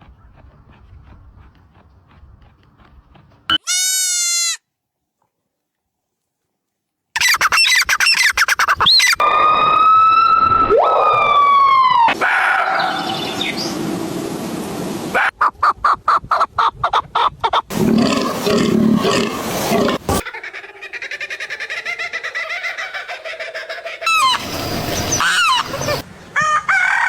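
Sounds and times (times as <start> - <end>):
quick animal chirps: 7.2 - 9.2
fast pulsing animal call: 7.2 - 13.7, 24.0 - 26.0
long whistled falling calls: 7.2 - 15.1, 24.1 - 26.6.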